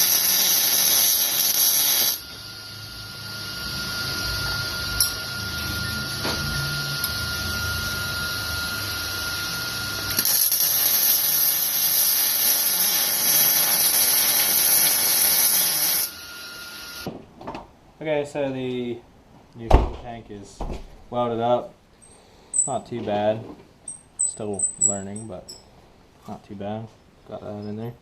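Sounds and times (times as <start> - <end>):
high steady whine: 0.0 - 12.4, 13.2 - 17.1
power tool hissing: 0.0 - 17.1.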